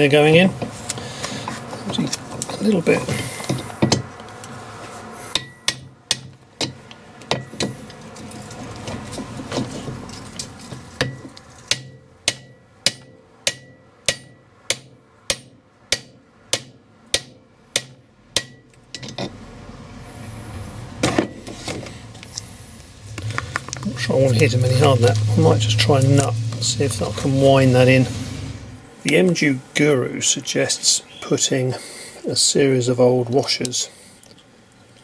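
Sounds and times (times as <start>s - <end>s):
hammer tapping metal: 5.3s - 7.7s, 11.0s - 19.3s.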